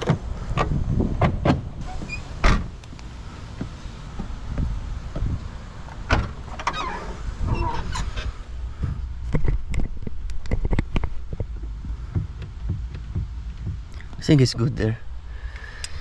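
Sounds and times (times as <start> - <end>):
squeaky scraping: 1.8 - 2.4, 6.6 - 8.4.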